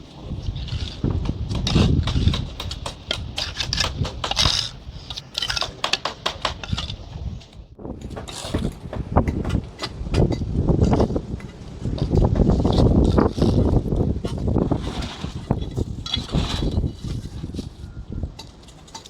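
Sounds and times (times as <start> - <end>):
trowel scraping mortar: 0.2 - 7.4, 9.7 - 19.0
trowel tapping on concrete blocks: 1.0 - 7.0.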